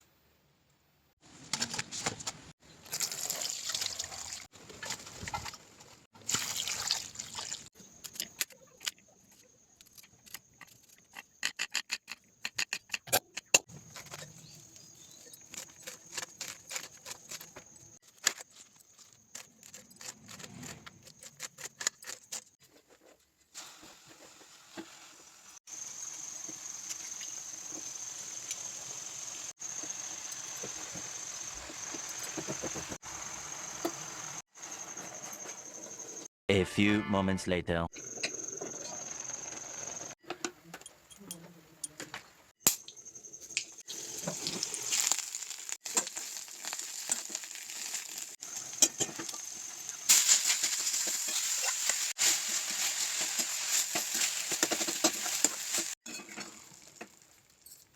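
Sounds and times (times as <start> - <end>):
utensils clicking and clattering: 50.1 - 56.5.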